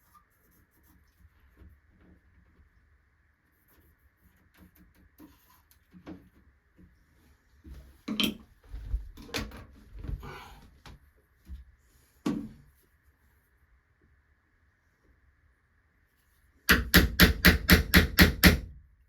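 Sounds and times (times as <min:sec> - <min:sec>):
chisel knocking into wood: 0:16.7 - 0:18.6.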